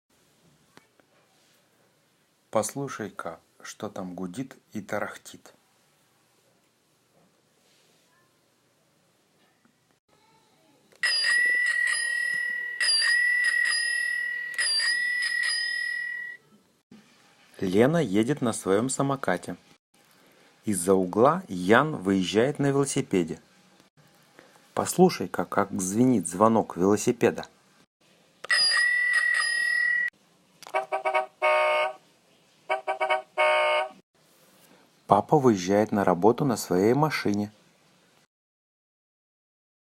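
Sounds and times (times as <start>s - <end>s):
bicycle bell ringing: 11.0s - 16.4s, 28.5s - 30.1s.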